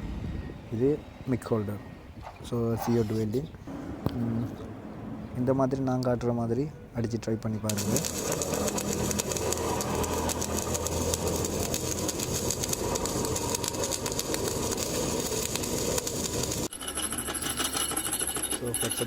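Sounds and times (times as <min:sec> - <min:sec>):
welding arc crackling and hissing: 0:07.7 - 0:16.7.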